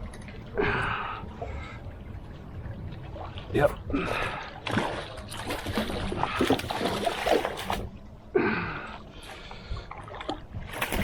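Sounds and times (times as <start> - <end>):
water splashing against kayak: 2.3 - 8.0, 9.2 - 11.0.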